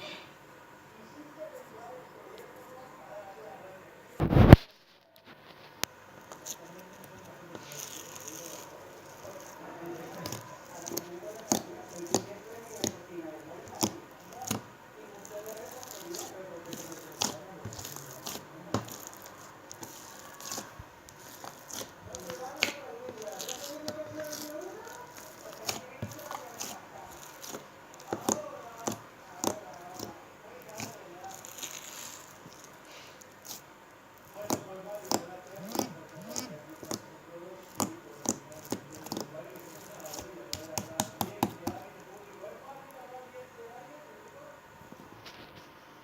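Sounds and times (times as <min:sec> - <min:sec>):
slime squished by hand: 0:04.2 - 0:04.7, 0:06.2 - 0:42.4.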